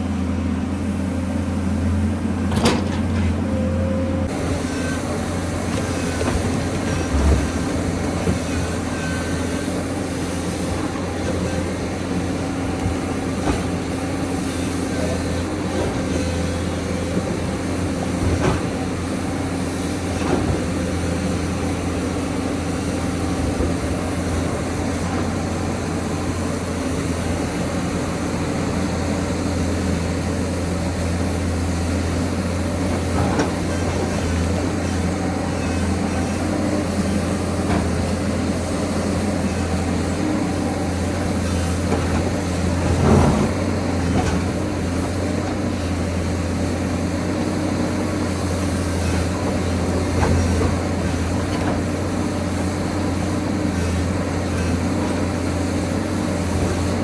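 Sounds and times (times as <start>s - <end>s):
excavator engine humming: 0.0s - 57.0s
knocks and clunks: 2.5s - 3.4s.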